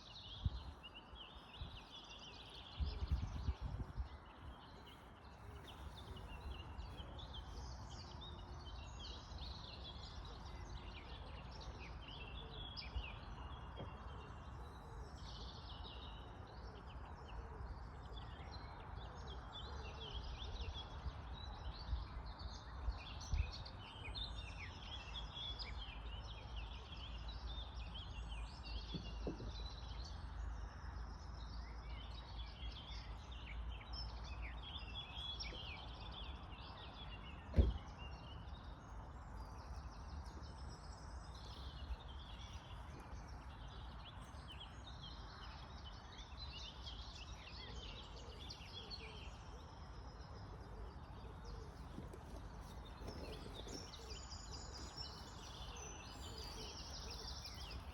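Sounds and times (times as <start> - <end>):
birds chirping and singing: 0.0 - 57.9
brief thump: 37.5 - 37.9.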